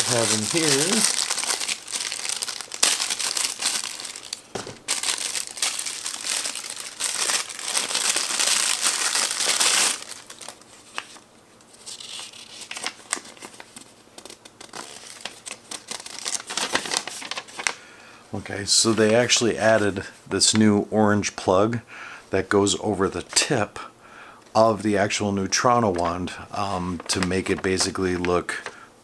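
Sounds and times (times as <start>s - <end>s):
packaging crinkling and rustling: 0.0s - 17.8s, 25.9s - 28.9s.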